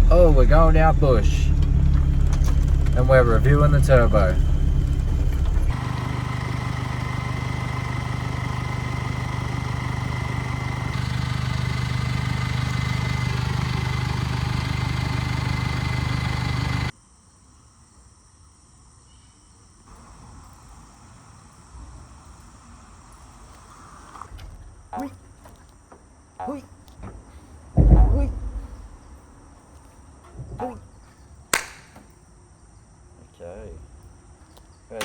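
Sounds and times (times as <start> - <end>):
diesel engine and road noise: 0.0 - 16.9, 21.9 - 31.8
thin steady whine: 0.0 - 16.9
faint insects: 0.0 - 35.0.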